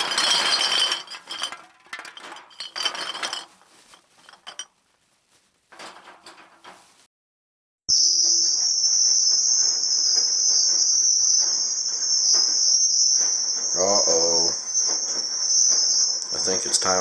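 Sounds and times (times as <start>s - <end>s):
washer drive belt squealing: 0.0s - 3.4s, 7.9s - 17.0s.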